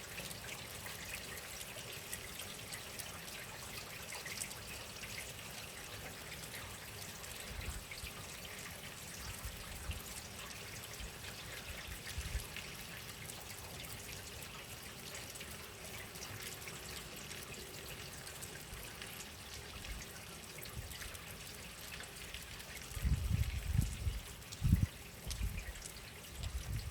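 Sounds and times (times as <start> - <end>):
drops pattering and dripping: 0.1 - 26.9
rain falling: 12.4 - 26.9.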